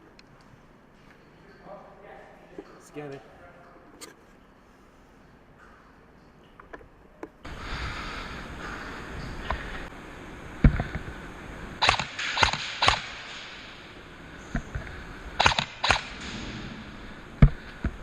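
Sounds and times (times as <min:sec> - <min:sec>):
low steady background noise: 0:00.0 - 0:18.0
airsoft gun shots: 0:11.8 - 0:13.8, 0:15.4 - 0:16.7.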